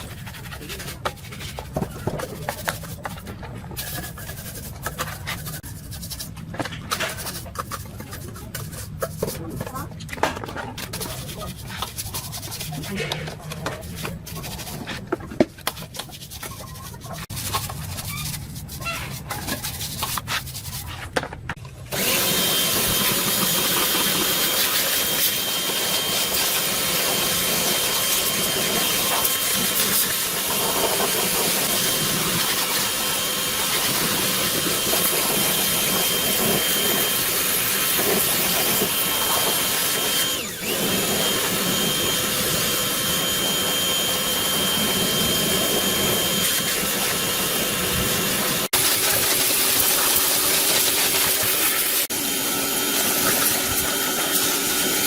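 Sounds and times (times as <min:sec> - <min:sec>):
power tool whining: 0:21.9 - 0:55.0.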